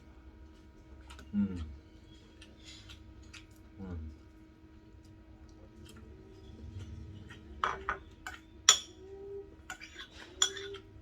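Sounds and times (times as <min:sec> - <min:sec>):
cutlery clinking against a dish: 0:09.7 - 0:10.9.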